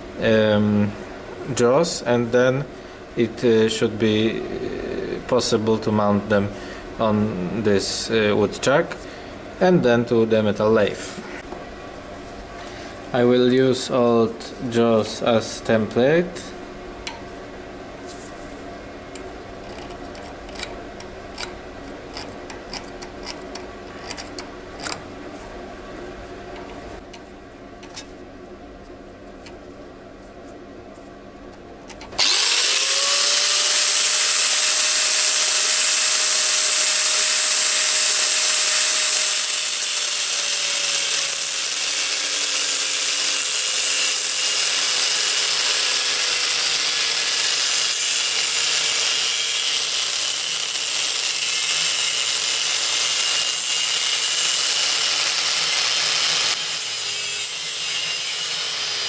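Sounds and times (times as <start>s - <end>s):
parts clicking and knocking: 19.2s - 25.1s, 31.5s - 32.2s
power tool whining: 32.1s - 59.0s.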